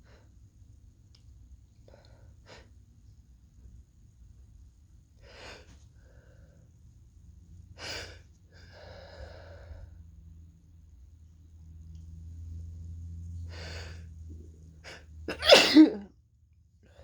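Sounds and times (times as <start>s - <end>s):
person breathing hard: 7.8s - 10.0s.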